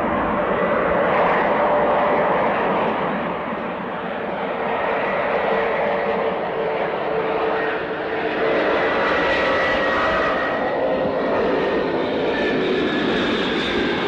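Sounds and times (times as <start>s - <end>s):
jet engines with high whine: 0.0s - 14.0s.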